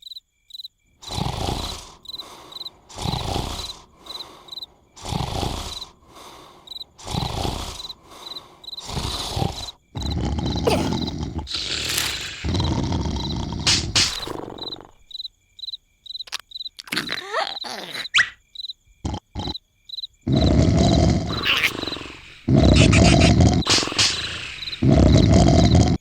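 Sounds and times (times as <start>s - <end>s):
cricket chirps: 0.0s - 26.0s
loud rasping snores: 1.0s - 15.1s, 19.0s - 19.6s, 20.3s - 26.0s.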